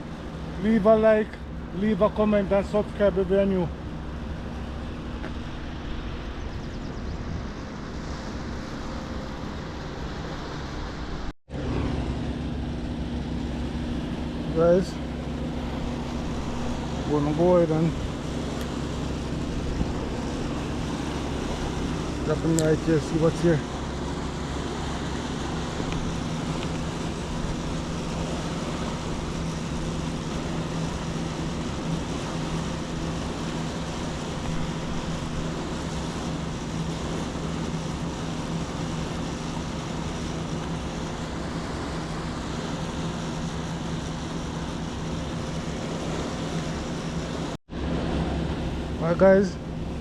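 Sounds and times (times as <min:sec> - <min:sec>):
low hum: 0:00.0 - 0:50.0
river water rushing: 0:07.4 - 0:50.0.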